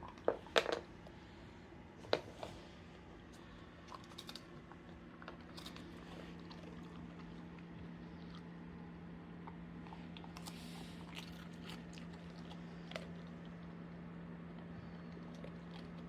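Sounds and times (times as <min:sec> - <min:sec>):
steady low hum: 0:00.0 - 0:16.0
dog licking and chewing: 0:03.9 - 0:13.8.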